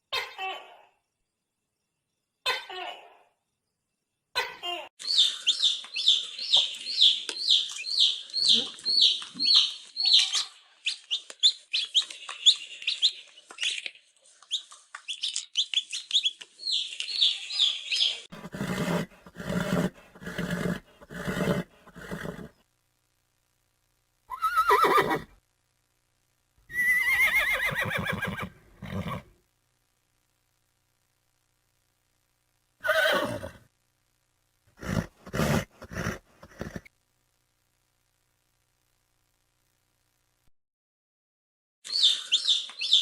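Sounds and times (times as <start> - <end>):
birds chirping: 5.0 - 22.6, 41.8 - 43.0
horse whinnying: 18.4 - 22.5, 24.3 - 25.3, 26.7 - 29.3, 32.8 - 33.6, 34.8 - 36.9.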